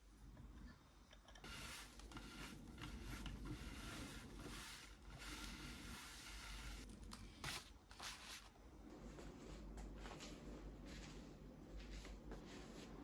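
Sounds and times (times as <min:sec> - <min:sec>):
faint scraping strokes: 0:01.5 - 0:08.5.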